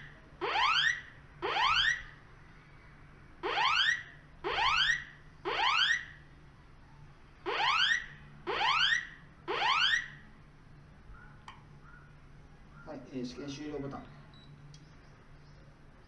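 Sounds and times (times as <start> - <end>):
fire alarm rising sweep tone: 0.0 - 2.1, 3.4 - 6.2, 7.5 - 10.2.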